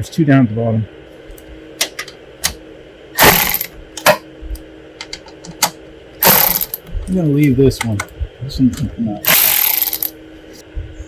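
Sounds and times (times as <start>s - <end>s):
cordless driver whirring: 3.2s - 3.7s, 6.2s - 6.8s, 9.3s - 10.1s
tools clicking: 3.2s - 4.2s, 5.0s - 8.1s, 9.3s - 10.1s.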